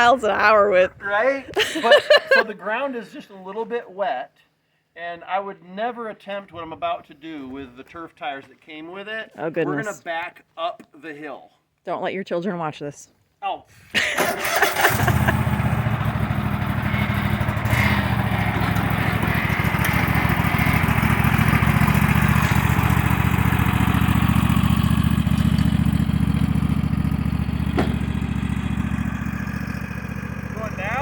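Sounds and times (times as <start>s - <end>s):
riding lawn mower engine running: 14.0s - 31.0s.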